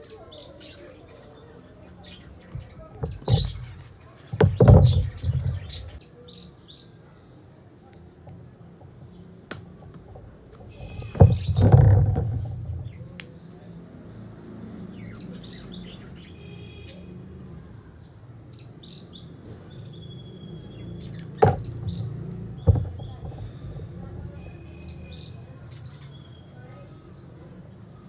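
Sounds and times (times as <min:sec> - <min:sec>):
small birds chirping: 0:00.0 - 0:28.0
loud low thud and rustle: 0:10.6 - 0:13.0.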